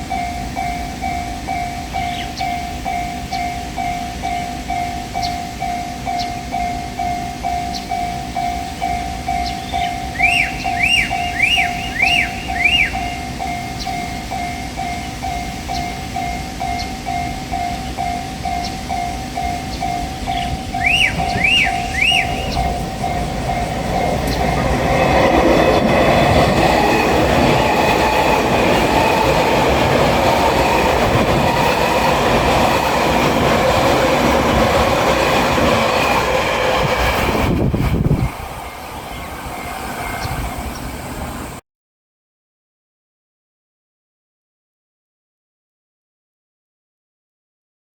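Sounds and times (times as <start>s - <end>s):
train wheels clattering on rails: 0.0s - 40.9s
level crossing warning bell: 0.0s - 41.6s.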